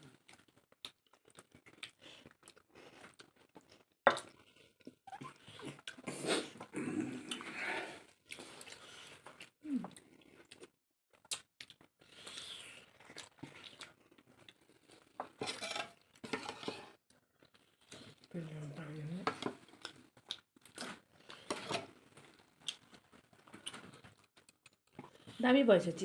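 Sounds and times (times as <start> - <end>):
food and dishware clicks and scrapes: 15.3 - 17.0, 20.8 - 21.9.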